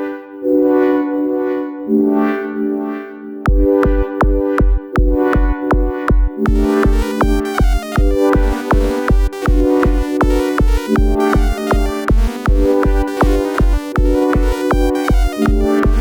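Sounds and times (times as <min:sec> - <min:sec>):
steady kick drum: 0:03.5 - 0:16.0
arpeggiated synth line: 0:06.5 - 0:16.0
brass-like synthesizer chords: 0:06.5 - 0:16.0.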